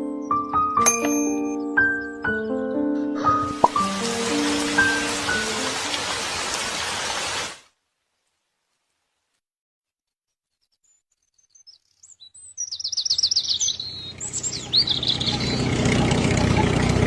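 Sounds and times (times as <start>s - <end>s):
bird chirping trills: 10.6s - 17.0s
vehicle engine drone: 14.0s - 17.0s.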